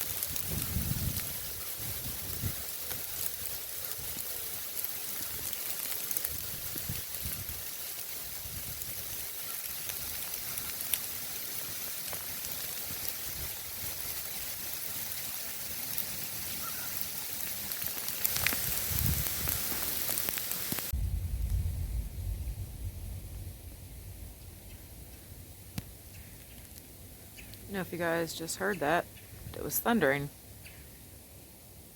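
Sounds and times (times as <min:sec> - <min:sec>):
sleet hissing and ticking: 0:00.0 - 0:21.0.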